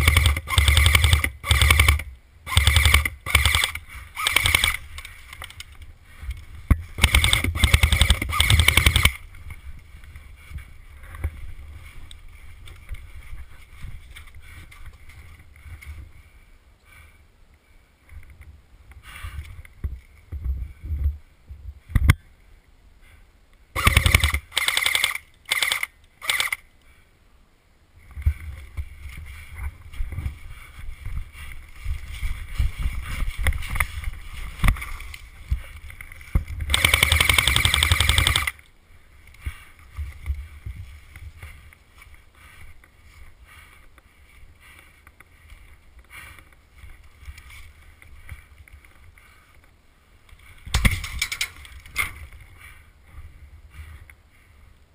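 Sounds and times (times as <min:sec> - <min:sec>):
airsoft machine gun firing: 0:00.0 - 0:04.8, 0:07.0 - 0:09.2, 0:23.8 - 0:26.6, 0:36.7 - 0:38.6
rustling movement noise: 0:00.3 - 0:23.3, 0:24.5 - 0:54.9.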